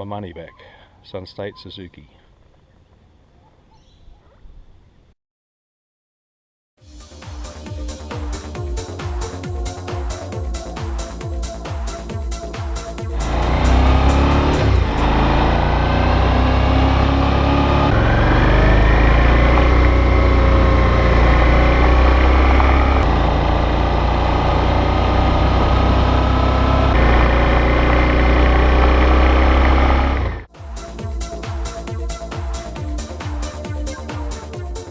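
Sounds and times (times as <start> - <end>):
motorcycle engine running: 7.0 - 34.9.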